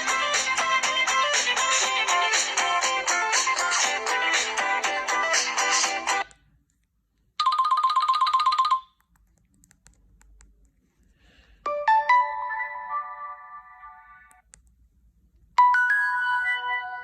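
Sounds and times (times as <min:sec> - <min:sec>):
bell-like phone chime: 0:07.4 - 0:08.9, 0:15.6 - 0:17.0.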